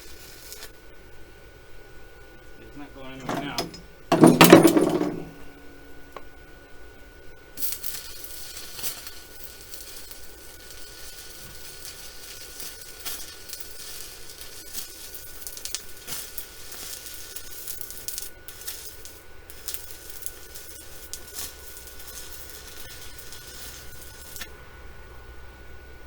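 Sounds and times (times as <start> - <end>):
welding arc crackling sizzle: 0.0 - 1.2, 7.5 - 25.6.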